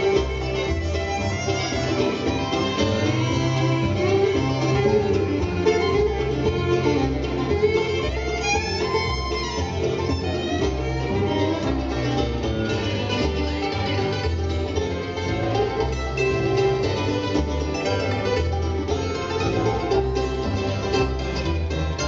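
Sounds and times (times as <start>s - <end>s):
acoustic guitar: 0.0s - 22.0s
bass line: 0.0s - 22.0s
fiddle: 0.0s - 22.0s
picked banjo: 0.0s - 22.0s.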